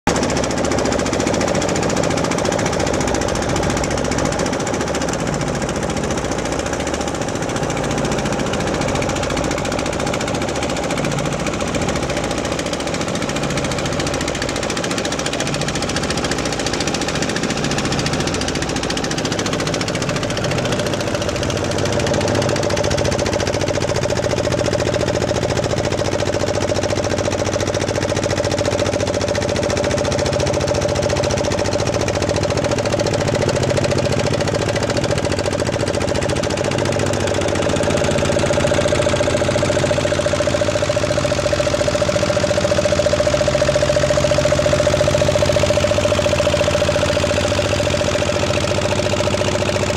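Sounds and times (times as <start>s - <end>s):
boat engine running: 0.1s - 49.9s.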